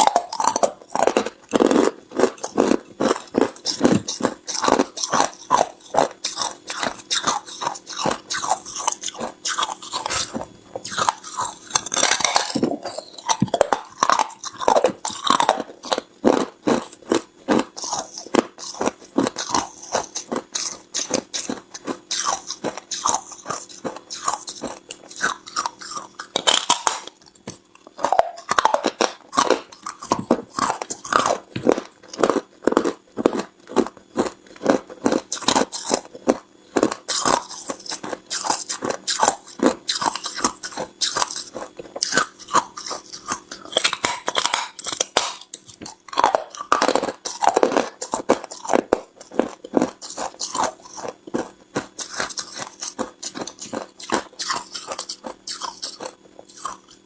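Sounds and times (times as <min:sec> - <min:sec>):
ice crunching between teeth: 0:00.0 - 0:57.0.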